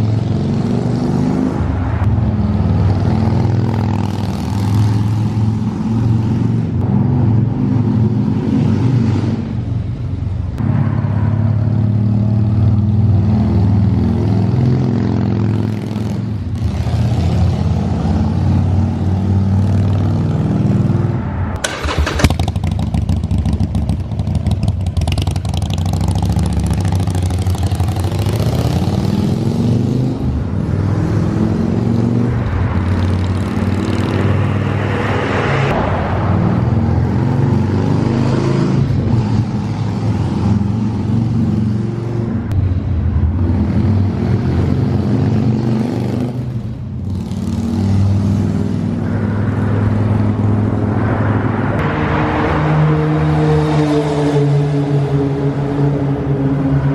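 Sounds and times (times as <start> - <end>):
motorcycle engine revving: 10.6 - 35.7, 36.6 - 56.9.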